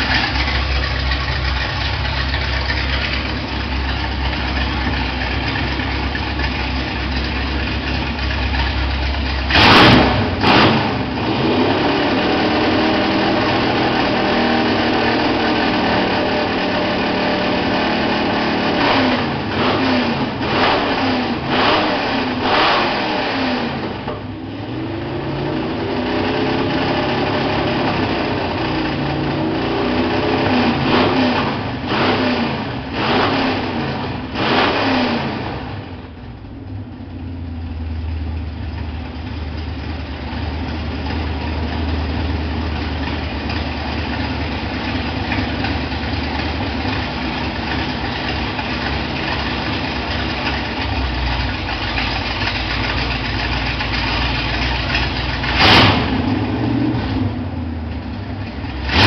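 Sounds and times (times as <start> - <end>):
car engine idling and revving: 0.0 - 59.0
loud sharp engine bursts: 55.3 - 57.3.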